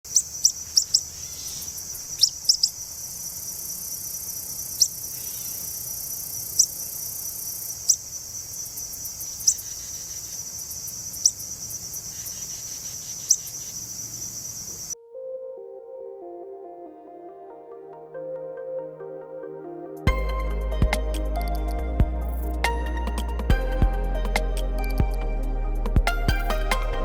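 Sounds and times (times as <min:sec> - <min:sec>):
bird chirping: 0:00.1 - 0:15.0
insects trilling: 0:00.1 - 0:15.0.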